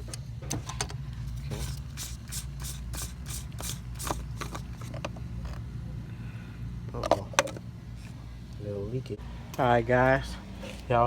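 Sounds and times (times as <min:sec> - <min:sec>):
wrench clicking and scraping: 0:00.0 - 0:05.6
steady low hum: 0:00.0 - 0:11.0.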